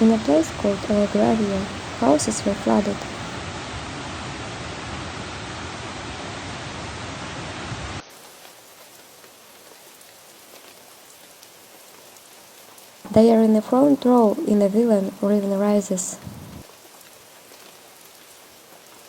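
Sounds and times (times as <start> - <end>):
water hissing: 0.0 - 8.6.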